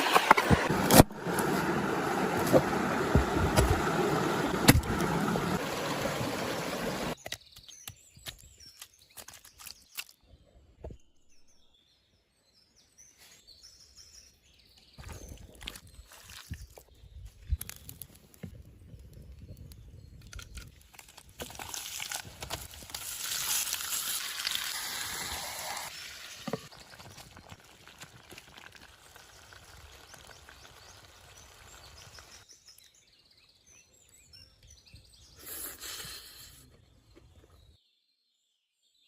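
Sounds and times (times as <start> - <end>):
hiss of pouring or sizzling: 23.2 - 26.7.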